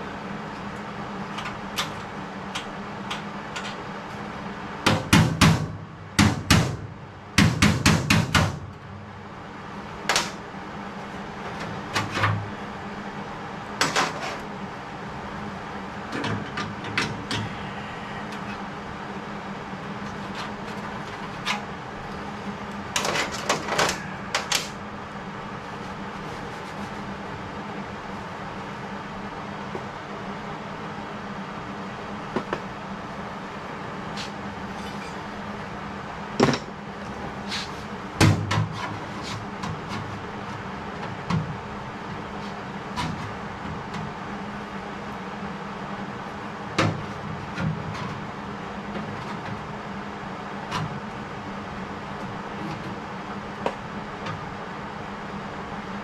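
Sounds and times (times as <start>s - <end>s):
low shop hum: 0.0s - 56.0s
hammer blows on sheet metal: 4.9s - 8.6s.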